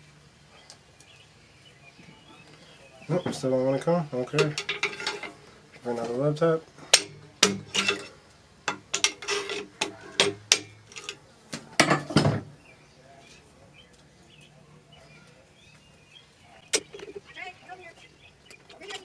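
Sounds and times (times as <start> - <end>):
metal tools clanking: 4.2 - 5.4, 6.8 - 11.2.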